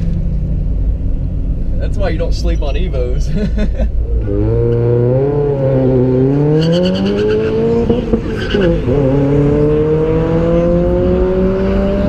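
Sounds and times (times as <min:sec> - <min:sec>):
car engine accelerating hard: 0:04.0 - 0:12.0.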